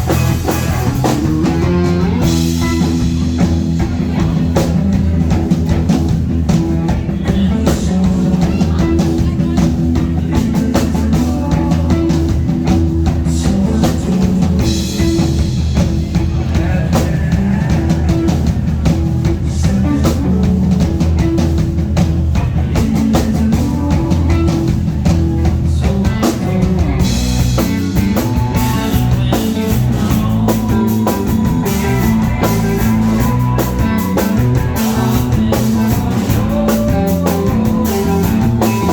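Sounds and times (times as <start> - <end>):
live rock band playing: 0.0 - 38.9.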